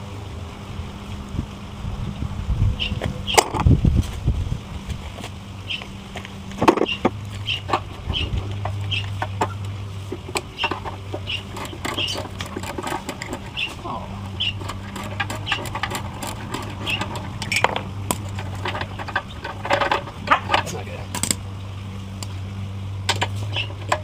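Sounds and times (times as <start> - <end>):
steady low hum: 0.0 - 24.0
metal tools knocking and clicking: 10.2 - 13.7, 14.5 - 21.4.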